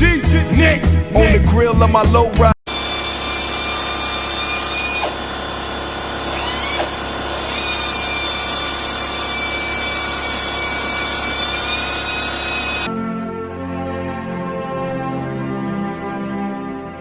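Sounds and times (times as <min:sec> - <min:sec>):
power tool running: 0:02.7 - 0:12.9.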